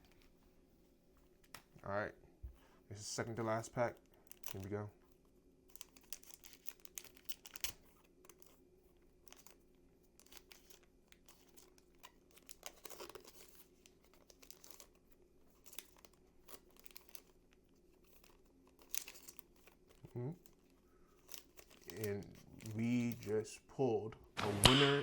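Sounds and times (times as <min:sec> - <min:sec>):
wrapper tearing and crinkling: 0:05.7 - 0:08.5, 0:10.2 - 0:17.4, 0:18.0 - 0:23.3.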